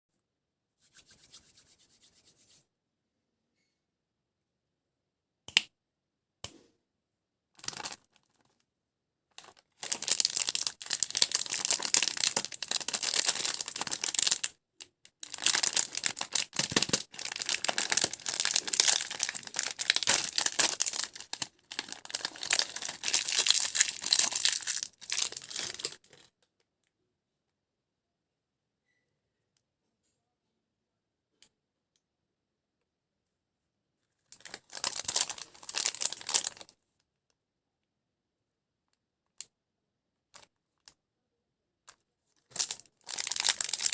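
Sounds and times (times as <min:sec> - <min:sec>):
plastic wrapper crackling and tearing: 0:07.6 - 0:08.6, 0:09.4 - 0:14.5, 0:15.1 - 0:26.2, 0:34.4 - 0:36.7, 0:42.5 - 0:43.9.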